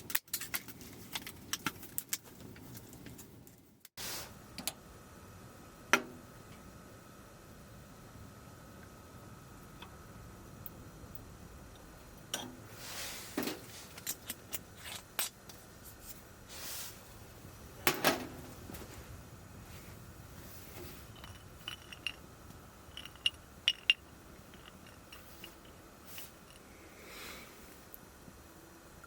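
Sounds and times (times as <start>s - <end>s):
small objects clicking: 21.1s - 26.7s.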